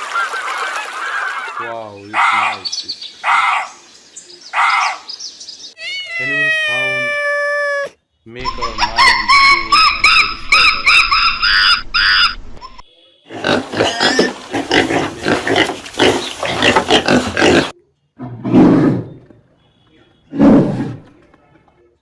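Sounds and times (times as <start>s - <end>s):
loud low animal call: 5.8s - 19.3s
animal grunts and squeals: 5.8s - 19.4s.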